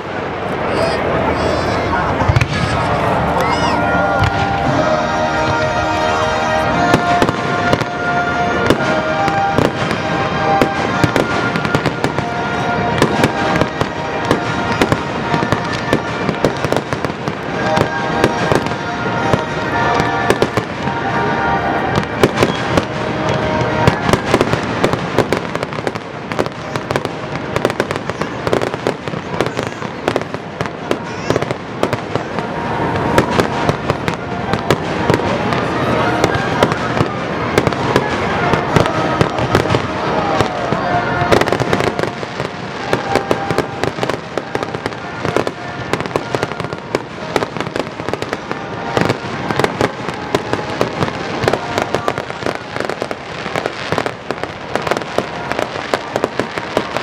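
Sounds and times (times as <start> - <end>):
fireworks bursts and crackling: 0.0 - 57.0
music playing: 0.7 - 25.3.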